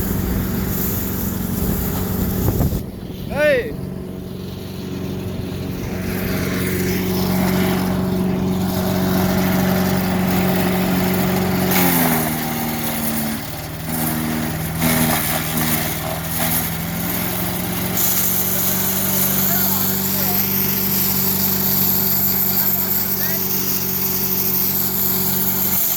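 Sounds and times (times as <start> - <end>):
wood chipper running: 0.0 - 25.9.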